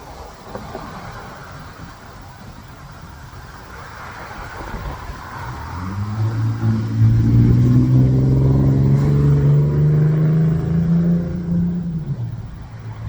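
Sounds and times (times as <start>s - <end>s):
vehicle engine accelerating: 4.6s - 13.0s.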